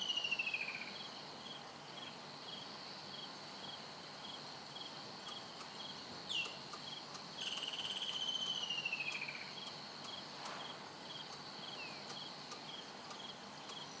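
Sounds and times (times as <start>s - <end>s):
bird whistles and warbled call: 0.0s - 1.0s, 7.4s - 9.6s
insect chirp: 0.0s - 14.0s.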